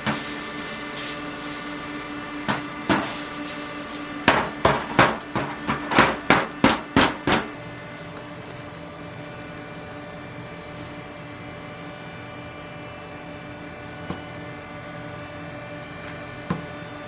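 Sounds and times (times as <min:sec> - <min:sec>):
steady kitchen hum: 0:00.0 - 0:17.0
knife chopping on wooden board: 0:02.5 - 0:03.2, 0:04.3 - 0:07.5.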